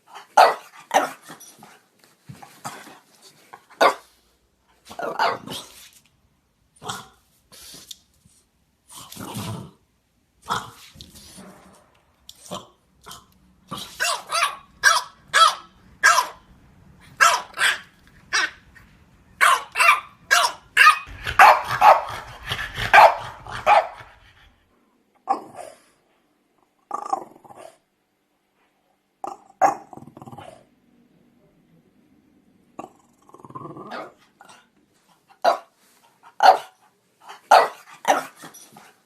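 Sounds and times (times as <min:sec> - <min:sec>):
dogs barking: 0:00.4 - 0:01.2, 0:13.8 - 0:16.5, 0:17.1 - 0:18.6, 0:19.4 - 0:24.4, 0:36.4 - 0:36.8, 0:37.4 - 0:38.4.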